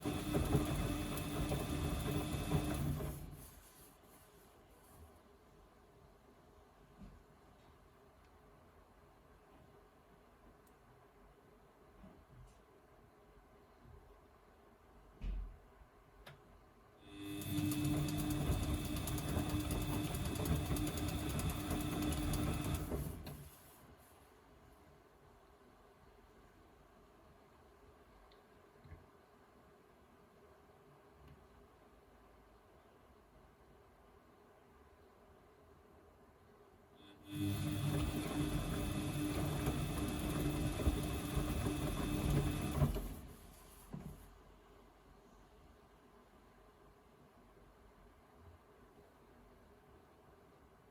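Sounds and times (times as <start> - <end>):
washing machine motor humming: 0.0 - 3.6, 17.1 - 23.6, 37.2 - 44.2.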